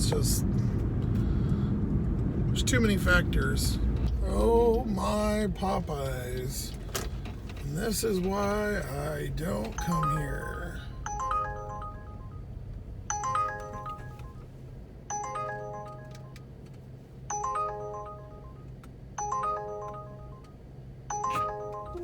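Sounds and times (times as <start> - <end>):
steady low hum: 0.0 - 22.0
phone alert chime: 9.8 - 12.5, 13.1 - 14.4, 15.1 - 16.4, 17.3 - 18.6, 19.2 - 20.4, 21.1 - 22.0.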